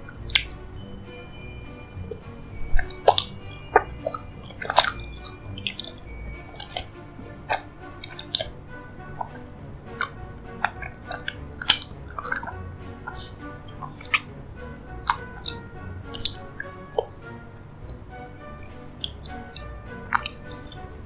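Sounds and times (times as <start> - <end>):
quiet background music: 0.0 - 21.0
mouth clicks and smacks chewing: 2.8 - 6.9, 10.0 - 17.1, 19.0 - 20.9.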